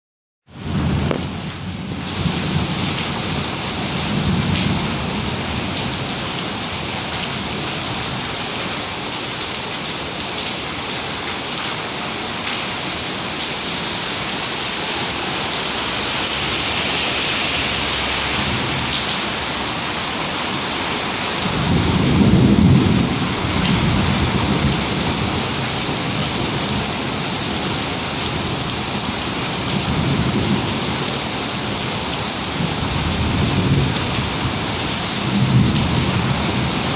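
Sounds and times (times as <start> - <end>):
heavy rain falling: 0.5 - 36.9
thunder rumbling: 21.4 - 31.0.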